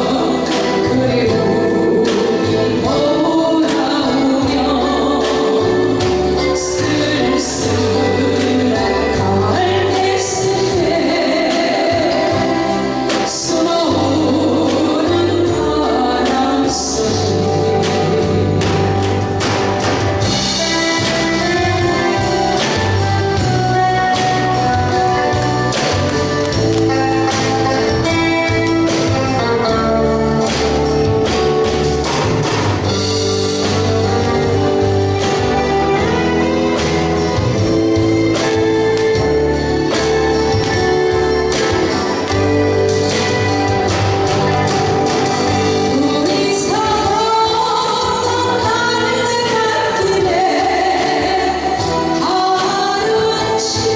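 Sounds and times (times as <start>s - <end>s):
woman singing a slow ballad: 0.0s - 25.6s, 45.8s - 53.9s
live band music: 0.0s - 53.9s.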